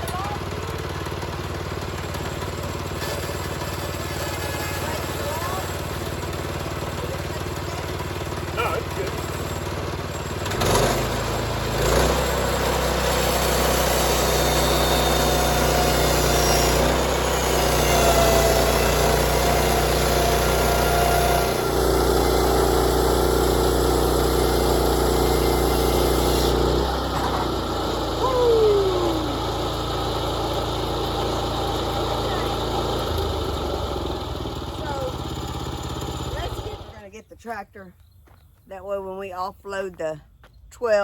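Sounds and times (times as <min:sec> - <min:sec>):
engine running: 0:00.0 - 0:37.1.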